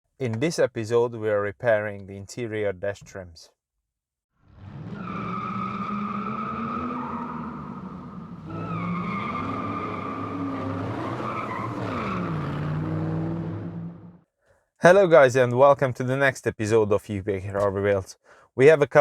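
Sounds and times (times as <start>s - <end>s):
car engine revving: 4.4s - 14.2s
high tyre squeal: 4.5s - 14.1s.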